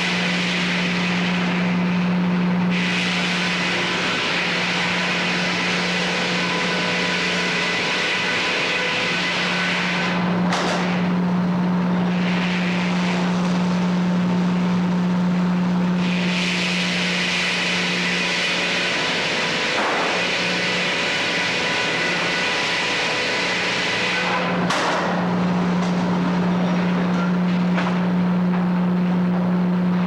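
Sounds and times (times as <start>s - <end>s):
sawmill engine drone: 0.0s - 30.0s
low hum: 25.2s - 30.0s.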